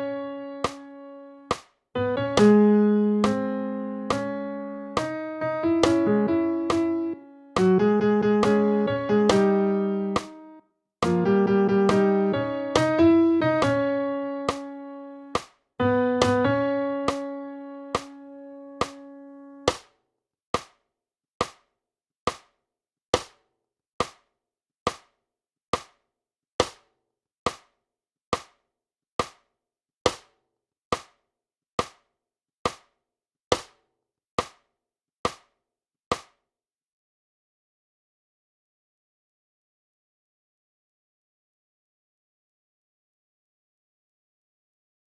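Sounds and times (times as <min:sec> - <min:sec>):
electric piano chord: 0:02.0 - 0:10.4, 0:11.1 - 0:19.6.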